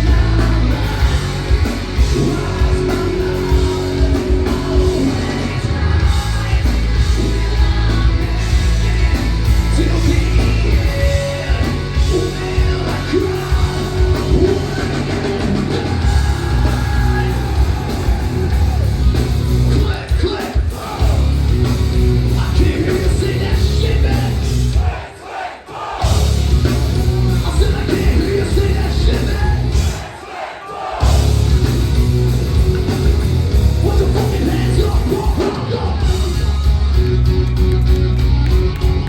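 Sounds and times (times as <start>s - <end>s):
shouted vocals: 0.0s - 21.5s, 22.2s - 26.4s, 27.0s - 31.6s
hard rock band playing: 0.0s - 25.2s, 25.9s - 30.2s, 30.9s - 39.0s
crowd yelling: 0.0s - 39.0s.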